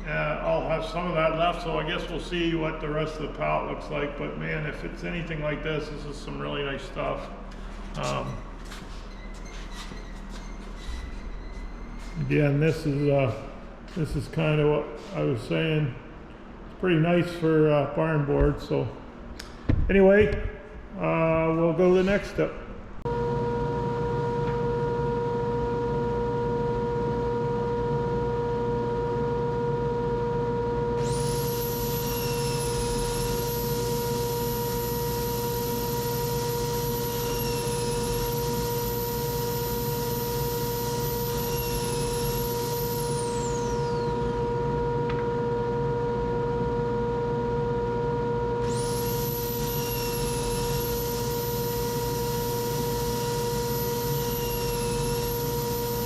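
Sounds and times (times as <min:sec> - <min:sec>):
machine hum: 0:00.0 - 0:56.0
high-pitched motor whine: 0:23.1 - 0:56.0.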